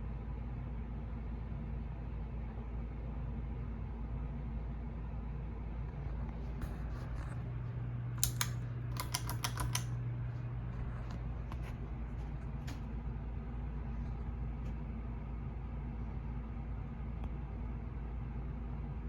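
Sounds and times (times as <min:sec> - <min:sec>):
ceiling fan motor humming: 0:00.0 - 0:19.0
light clicks: 0:08.2 - 0:09.9.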